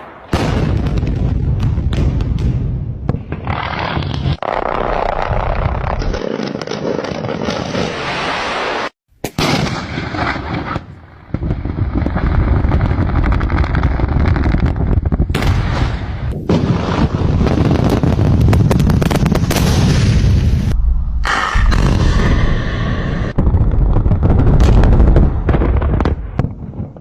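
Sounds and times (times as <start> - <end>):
explosive blasting rumble: 11.3 - 27.0.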